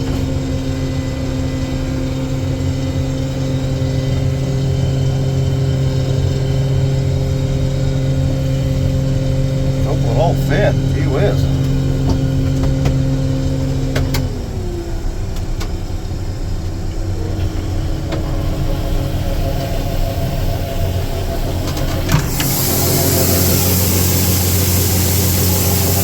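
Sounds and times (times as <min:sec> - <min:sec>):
combine harvester engine running: 0:00.0 - 0:26.0
loud hissing rush: 0:18.5 - 0:26.0.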